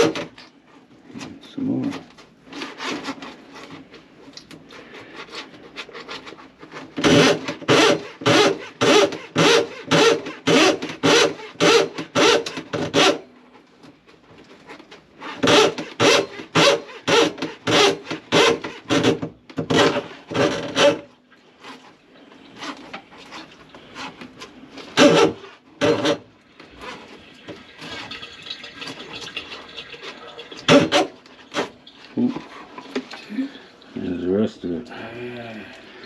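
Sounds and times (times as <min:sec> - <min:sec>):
tool rasping in drain: 0:00.0 - 0:00.5, 0:04.6 - 0:13.2, 0:14.7 - 0:33.2.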